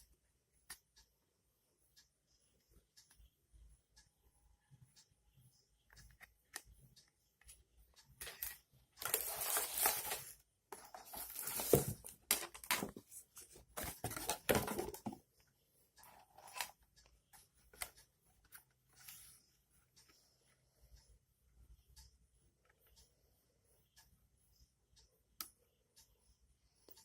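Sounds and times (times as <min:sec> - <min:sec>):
packaging rustling and tearing: 0:09.0 - 0:10.3, 0:11.0 - 0:12.9.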